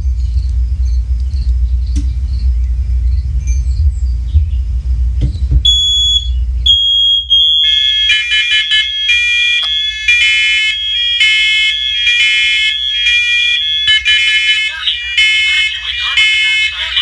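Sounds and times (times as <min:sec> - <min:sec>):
smoke alarms beeping: 0:05.6 - 0:17.0.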